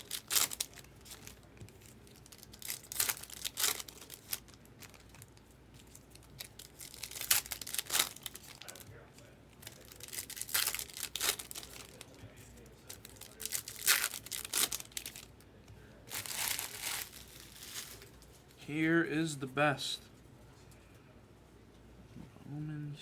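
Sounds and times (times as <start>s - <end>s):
rustling of wrapper and cards: 0.0s - 15.4s, 16.1s - 18.4s
wrappers tearing and crinkling: 0.0s - 15.4s, 16.1s - 18.3s.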